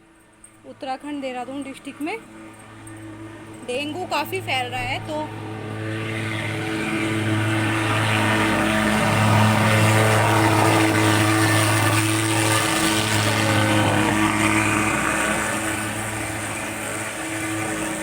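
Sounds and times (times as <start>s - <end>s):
fogging machine buzzing drone: 0.0s - 18.0s.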